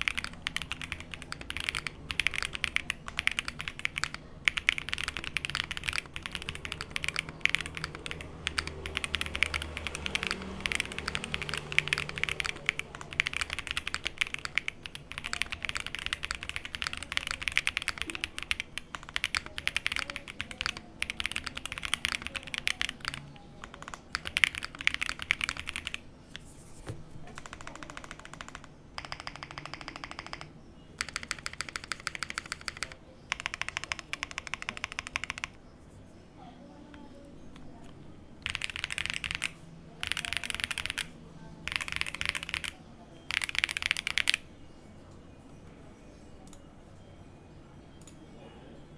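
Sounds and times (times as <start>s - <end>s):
mechanical keyboard typing: 0.0s - 35.6s, 37.0s - 44.5s.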